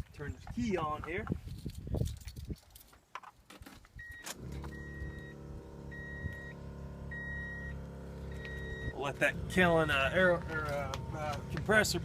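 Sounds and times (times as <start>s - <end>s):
truck warning chime beeps: 4.0s - 9.1s
air compressor running: 4.4s - 12.0s.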